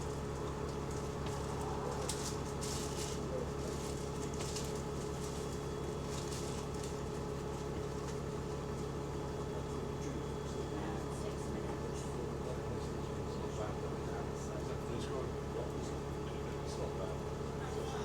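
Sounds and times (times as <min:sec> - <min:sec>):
bus engine low drone: 0:00.9 - 0:04.7.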